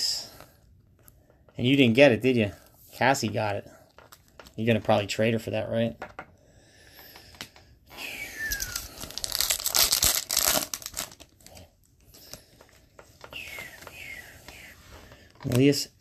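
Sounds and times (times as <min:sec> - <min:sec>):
rustling of handling: 0:00.4 - 0:05.1, 0:08.5 - 0:15.9
wrapper tearing and crinkling: 0:08.5 - 0:11.6.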